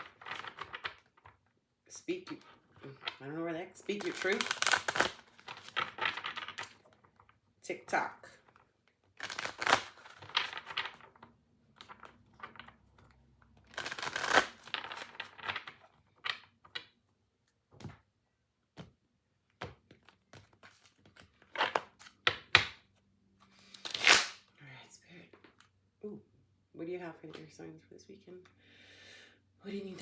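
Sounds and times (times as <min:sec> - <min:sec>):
cards riffle shuffling: 0:03.9 - 0:06.9, 0:09.2 - 0:11.1, 0:13.6 - 0:15.7, 0:23.6 - 0:24.4.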